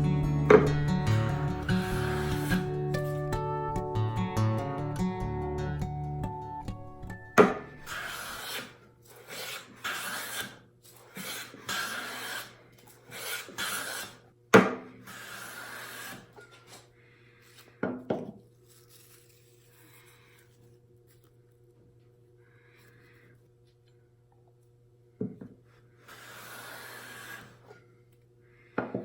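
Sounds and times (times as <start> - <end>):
hand plane strokes on wood: 0.5 - 3.2, 7.4 - 14.2, 15.0 - 16.8, 26.1 - 27.8.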